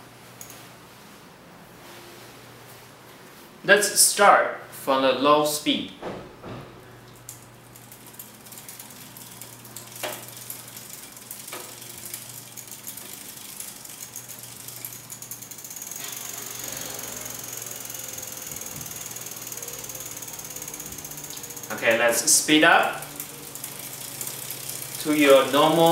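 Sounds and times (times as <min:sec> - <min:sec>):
freewheel ratchet clicking: 0:07.3 - 0:25.9
thin high whine: 0:14.0 - 0:25.9.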